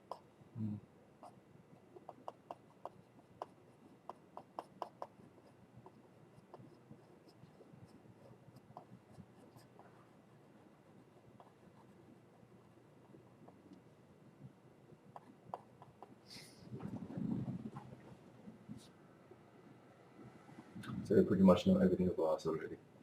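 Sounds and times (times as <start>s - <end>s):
stylus tapping on plastic tablet: 2.0s - 5.2s.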